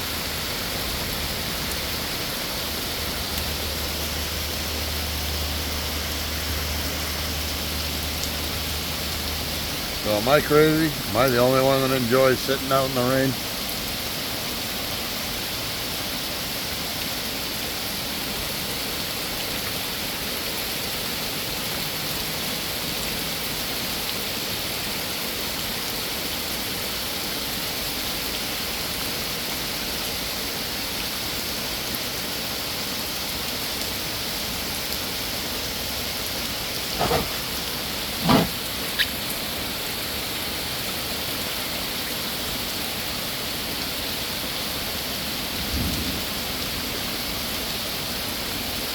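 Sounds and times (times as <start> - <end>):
heavy rain falling: 0.0 - 48.9
short sharp knocks: 37.0 - 37.4, 38.2 - 38.6.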